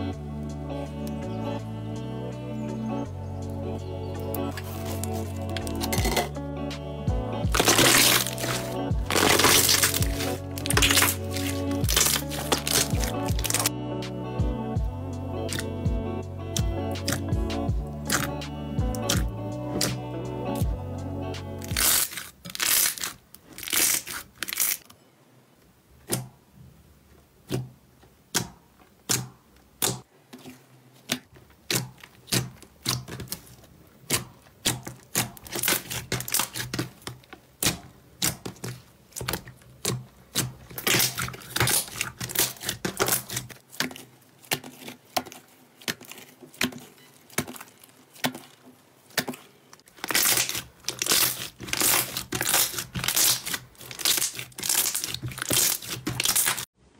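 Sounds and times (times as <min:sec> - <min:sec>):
slime crackling and popping: 0:07.5 - 0:13.7, 0:15.5 - 0:15.7, 0:16.6 - 0:17.3, 0:18.0 - 0:20.0, 0:21.6 - 0:24.9, 0:31.2 - 0:56.7.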